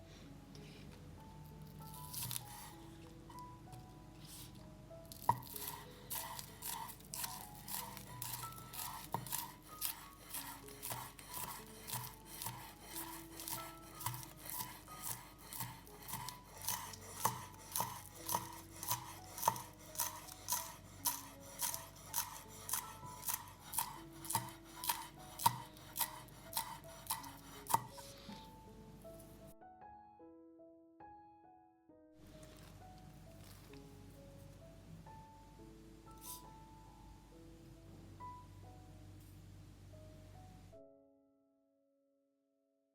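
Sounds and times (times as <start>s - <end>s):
soft background music: 0.0s - 42.0s
knife chopping on cutting board: 1.9s - 2.7s, 5.1s - 28.4s.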